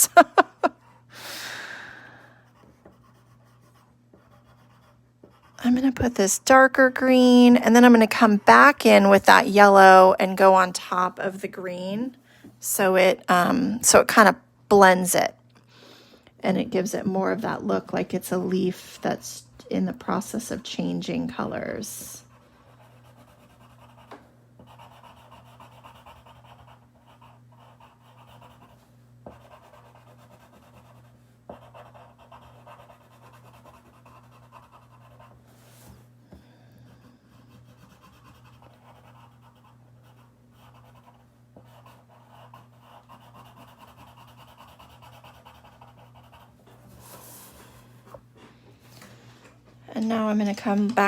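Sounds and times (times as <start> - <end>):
low electrical hum: 0.0 - 51.0
colouring tool scratching on paper: 22.2 - 35.4, 37.3 - 47.2.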